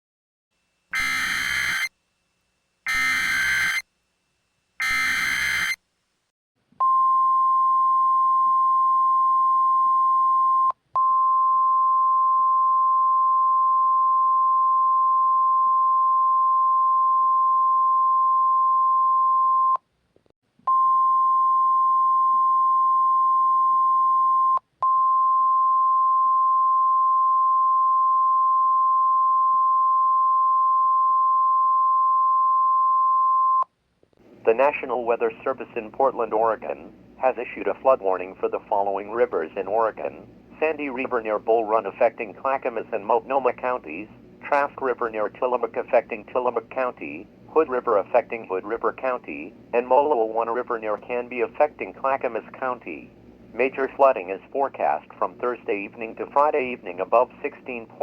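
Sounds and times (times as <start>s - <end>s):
screechy digital data tones: 1.0s - 1.9s, 2.9s - 3.8s, 4.8s - 5.8s
steady high warning beep: 1.0s - 1.9s, 2.9s - 3.8s, 4.8s - 5.8s.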